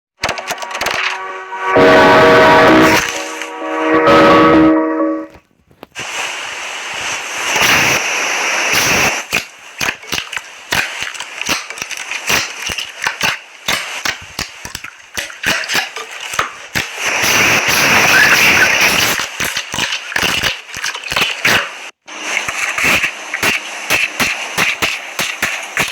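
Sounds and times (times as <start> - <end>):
slime crackling wetly: 8.7 - 22.0.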